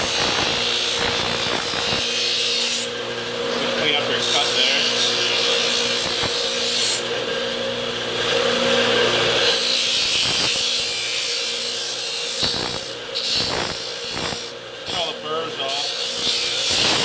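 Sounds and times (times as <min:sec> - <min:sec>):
power tool motor hum: 0:00.0 - 0:17.0
wire wheel scratching hiss: 0:12.4 - 0:15.1.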